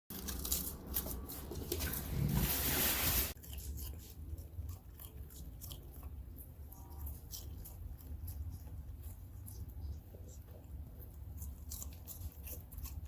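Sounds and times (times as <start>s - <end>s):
small animal chewing cabbage: 0.1s - 13.0s
loud rustling: 1.2s - 3.4s.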